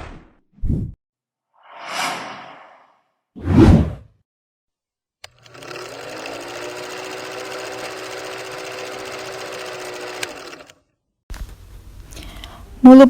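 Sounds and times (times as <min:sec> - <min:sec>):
click: 0:05.2 - 0:05.4
small motor running: 0:05.2 - 0:10.8.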